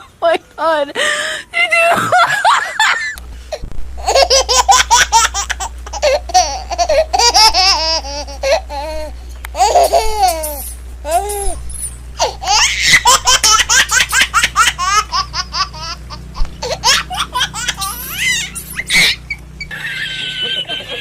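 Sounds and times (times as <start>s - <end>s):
steady low hum: 0.0s - 21.0s
high-pitched laughter: 12.2s - 21.0s.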